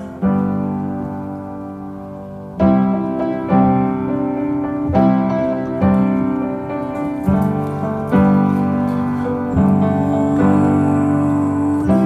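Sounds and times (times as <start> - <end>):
piano chords: 0.0 - 12.0
person singing: 9.3 - 12.0.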